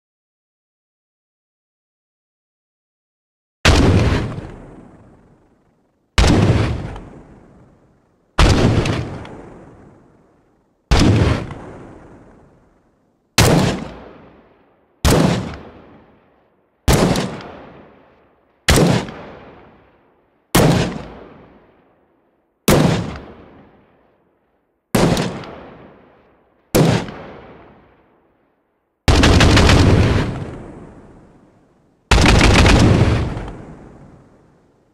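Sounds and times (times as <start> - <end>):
rifle shots: 3.7 - 5.2, 6.2 - 7.6, 8.4 - 10.0, 10.9 - 12.4, 13.4 - 14.4, 15.0 - 16.1, 16.9 - 18.0, 18.7 - 19.8, 20.5 - 21.6, 22.7 - 23.7, 24.9 - 26.0, 26.7 - 27.9, 29.1 - 31.1, 32.1 - 33.8
automatic gunfire burst: 16.9 - 17.4, 29.1 - 30.4, 32.1 - 33.5.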